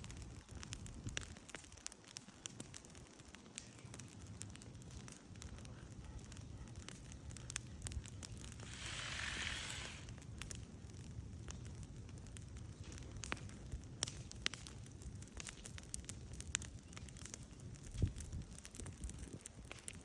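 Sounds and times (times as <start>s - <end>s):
wood fire crackling and popping: 0.0s - 20.0s
hiss: 8.6s - 10.2s.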